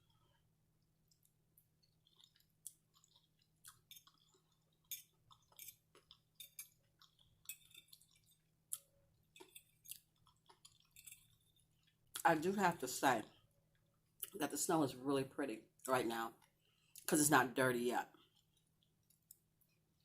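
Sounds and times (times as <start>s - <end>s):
person chewing food: 0.0s - 12.3s, 13.2s - 14.4s, 16.3s - 17.1s, 18.1s - 20.0s.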